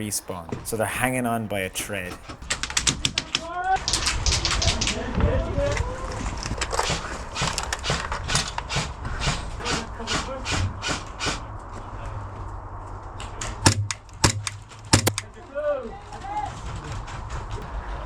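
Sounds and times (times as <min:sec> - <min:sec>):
quick footsteps: 0:00.0 - 0:09.7, 0:10.6 - 0:15.4
loud sharp cracks: 0:02.4 - 0:05.1, 0:13.2 - 0:15.3.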